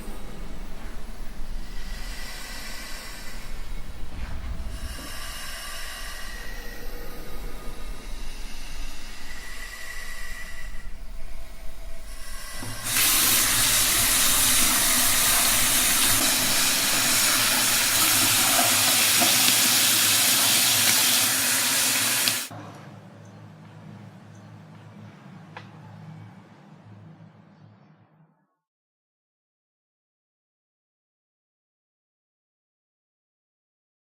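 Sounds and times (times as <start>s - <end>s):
water tap running into sink: 12.8s - 22.5s.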